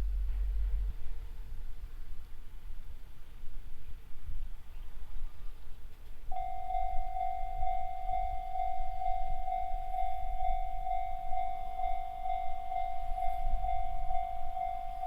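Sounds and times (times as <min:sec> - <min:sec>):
low rumble: 0:00.0 - 0:02.2
level crossing warning bell: 0:06.3 - 0:15.0.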